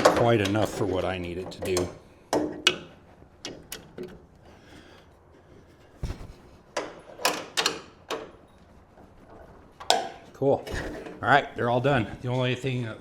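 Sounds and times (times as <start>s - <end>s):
sharp clicks and knocks: 0.0s - 4.4s, 6.0s - 8.4s, 9.8s - 11.2s
dull thud: 6.0s - 6.4s.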